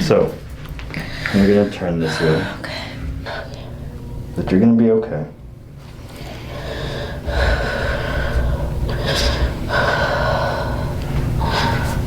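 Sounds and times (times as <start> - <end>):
person breathing heavily: 0.9 - 4.0, 6.2 - 12.0.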